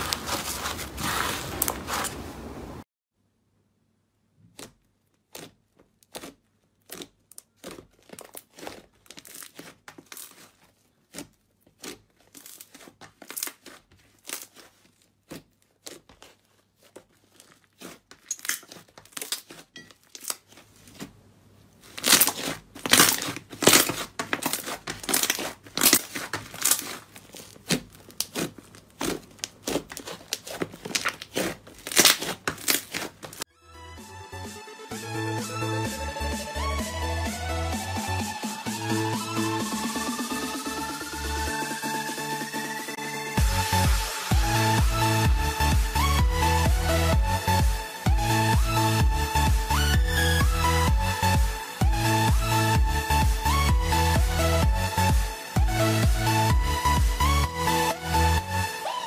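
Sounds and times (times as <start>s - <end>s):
slime squeezed crackling: 0.0s - 2.2s, 4.5s - 21.1s, 21.7s - 33.5s.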